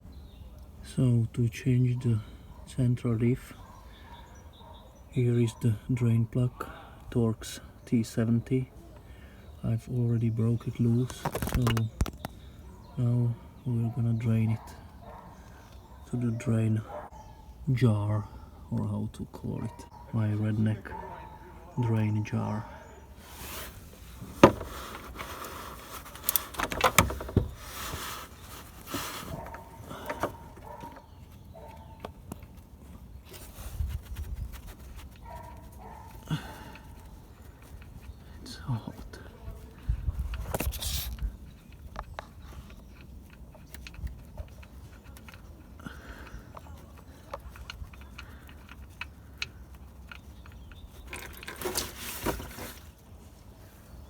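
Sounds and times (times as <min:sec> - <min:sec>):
light clicks and knocks: 0:24.2 - 0:33.5.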